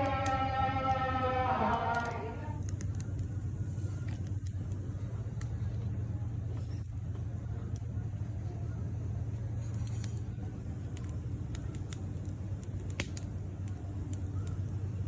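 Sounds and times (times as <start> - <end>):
low rumble of fire: 0.0 - 15.0
campfire crackling and popping: 1.8 - 5.8, 7.7 - 8.4, 9.1 - 15.0.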